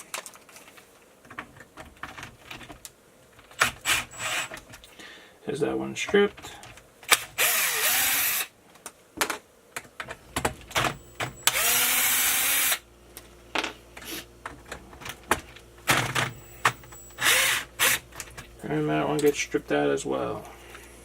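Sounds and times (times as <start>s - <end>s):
power drill motor whining: 3.8s - 4.6s, 7.4s - 8.5s, 10.8s - 12.8s, 16.1s - 18.2s.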